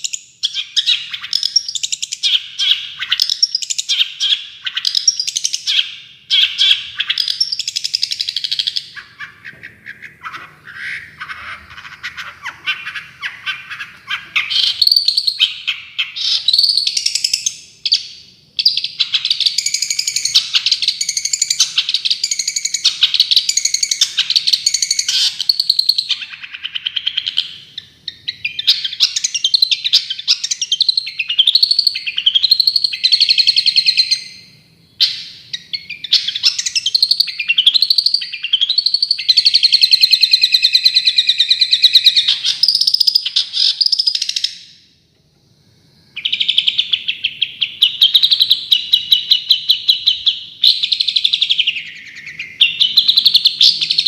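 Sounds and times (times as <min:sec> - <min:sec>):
shrike singing rapid chirps: 0:00.0 - 0:44.8, 0:46.0 - 0:54.0.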